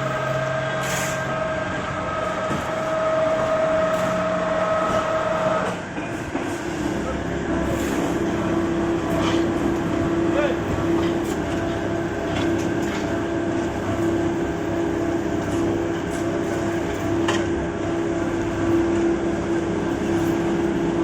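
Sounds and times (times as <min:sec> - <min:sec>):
machine humming: 0:00.0 - 0:06.0.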